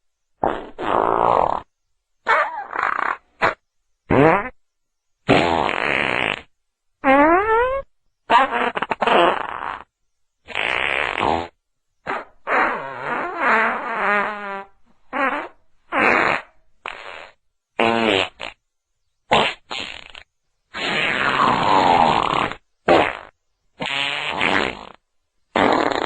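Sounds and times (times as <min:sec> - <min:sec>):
fart sounds: 0:00.4 - 0:04.6, 0:05.2 - 0:18.6, 0:19.3 - 0:26.0.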